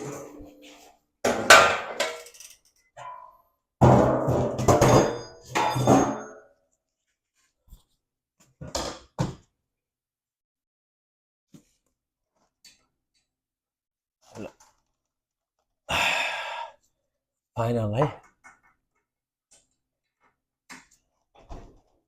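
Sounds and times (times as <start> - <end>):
metal clanking and rattling: 3.9 - 6.4.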